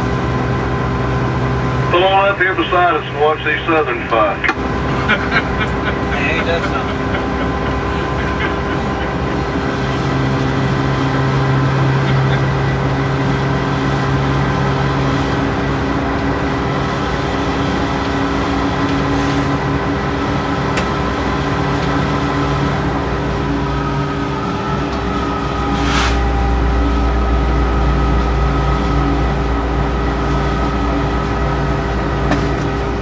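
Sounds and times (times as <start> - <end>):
locomotive engine drone: 0.0 - 33.0
train rolling noise: 0.0 - 33.0
low tone: 23.1 - 33.0.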